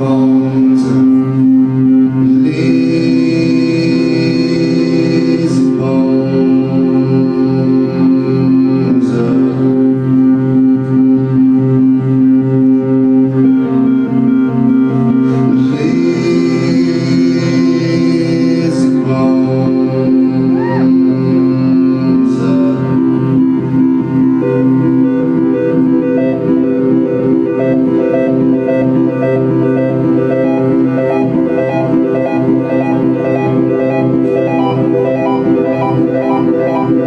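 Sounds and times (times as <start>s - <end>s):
live band music: 25.8s - 37.0s.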